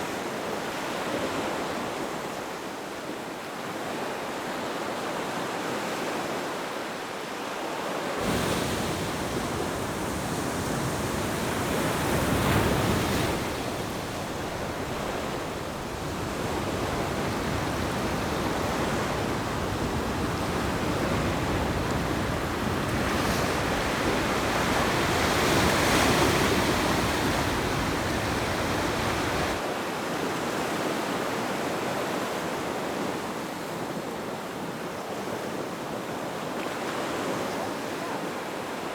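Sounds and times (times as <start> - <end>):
surf rushing onto shore: 8.2 - 29.6.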